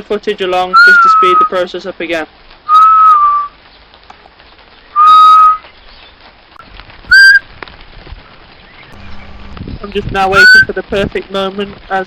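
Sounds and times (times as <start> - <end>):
person whistling: 7.1 - 7.4.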